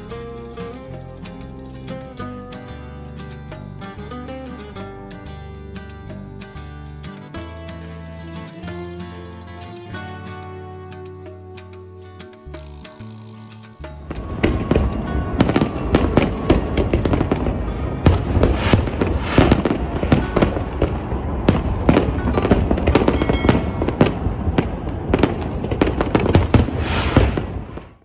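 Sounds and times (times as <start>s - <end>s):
fireworks bangs and crackles: 14.1s - 28.0s.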